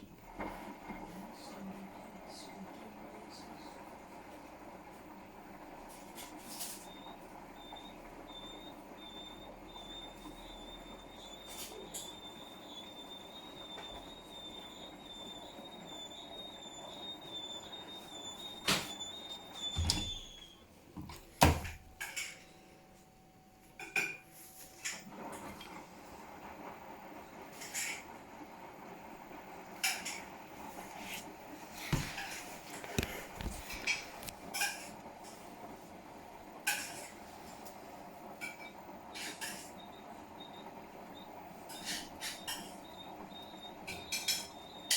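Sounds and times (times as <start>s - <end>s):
appliance running rumble: 0.0s - 44.9s
high-pitched squeak: 9.0s - 21.1s.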